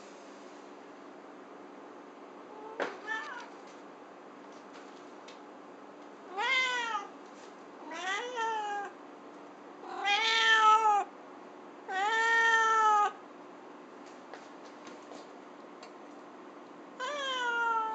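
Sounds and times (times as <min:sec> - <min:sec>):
cat meowing: 0:02.6 - 0:03.6, 0:06.3 - 0:07.2, 0:07.8 - 0:09.0, 0:09.8 - 0:11.1, 0:11.9 - 0:13.2, 0:17.0 - 0:17.9.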